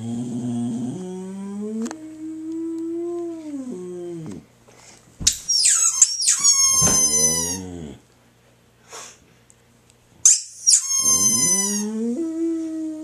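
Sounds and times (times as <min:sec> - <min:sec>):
squeaky dog toy squealing: 0:05.3 - 0:07.7, 0:10.2 - 0:12.0
dog howling: 0:06.6 - 0:07.9, 0:11.0 - 0:13.0.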